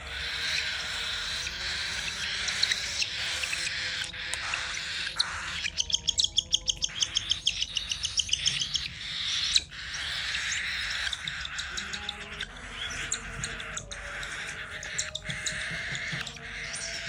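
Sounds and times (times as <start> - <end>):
harsh raspy bird screeching: 0.0 - 17.0
high repeated bird chirps: 0.0 - 17.0.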